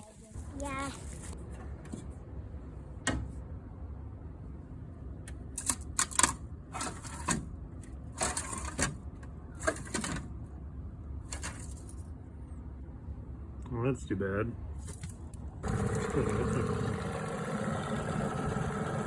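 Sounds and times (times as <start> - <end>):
printer low hum: 15.6 - 19.0.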